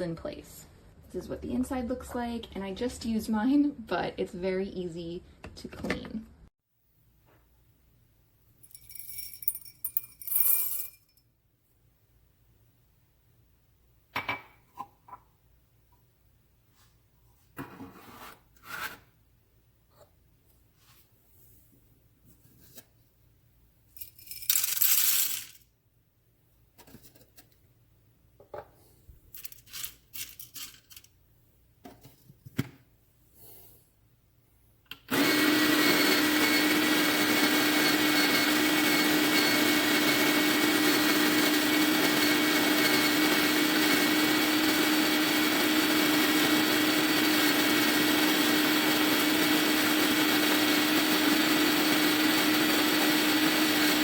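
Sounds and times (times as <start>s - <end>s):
coffee grinder whirring: 35.1s - 54.0s.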